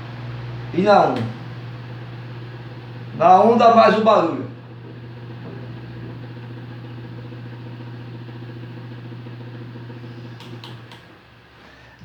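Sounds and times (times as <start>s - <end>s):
electric fan motor humming: 0.0s - 12.0s
clicks: 1.1s - 1.5s, 10.2s - 11.2s.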